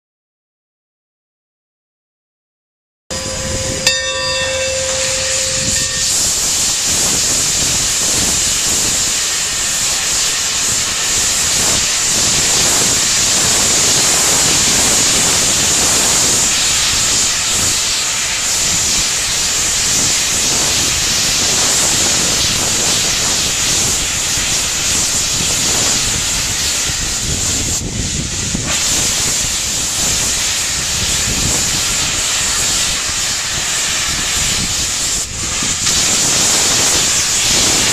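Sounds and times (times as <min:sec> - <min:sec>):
ringing tone: 0:03.1 - 0:07.9
steam locomotive venting steam: 0:03.1 - 0:37.9.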